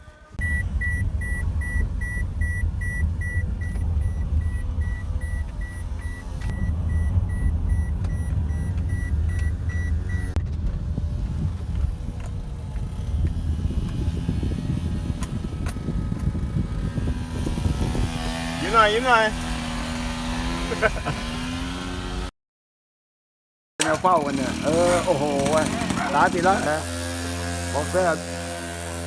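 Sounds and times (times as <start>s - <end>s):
low vehicle rumble: 0.2s - 22.3s
rapid high electronic beeping: 0.4s - 10.4s.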